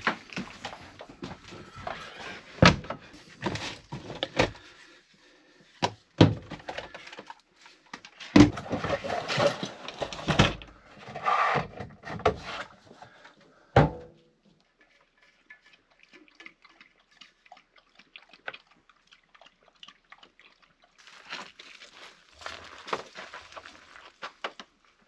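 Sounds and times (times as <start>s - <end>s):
scraping and rustling: 8.5s - 13.2s.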